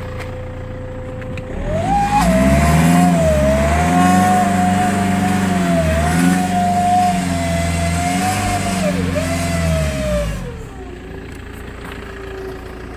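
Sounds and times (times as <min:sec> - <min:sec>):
car engine running: 0:00.0 - 0:12.9
turbo whistle: 0:01.5 - 0:09.4.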